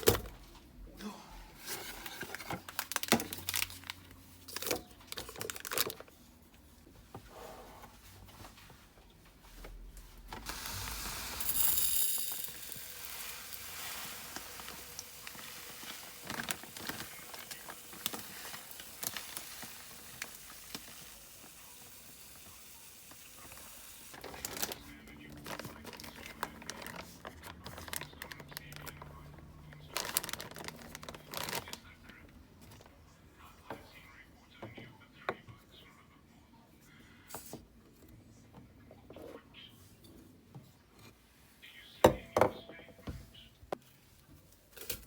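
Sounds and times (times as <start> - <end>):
crinkling and rustling: 1.6 - 7.2, 12.4 - 21.9, 23.1 - 33.0.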